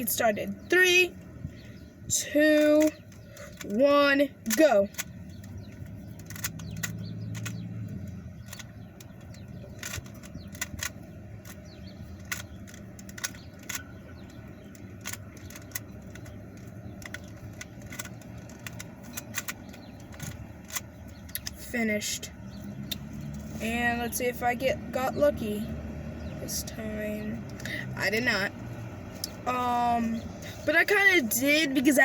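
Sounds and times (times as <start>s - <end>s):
puzzle cube plastic clicking: 2.4s - 21.6s.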